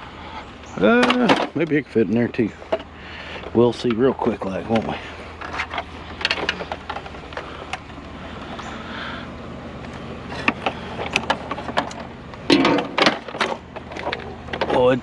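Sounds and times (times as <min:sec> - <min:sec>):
steady low hum: 0:00.0 - 0:15.0
knocks and clicks of scrap: 0:10.3 - 0:15.0.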